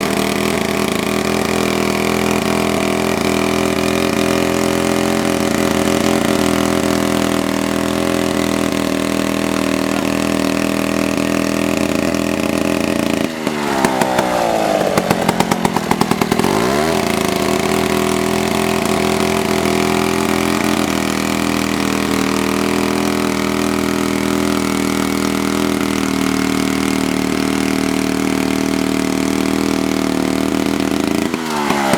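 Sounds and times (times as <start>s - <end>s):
chainsaw engine running: 0.0s - 31.9s.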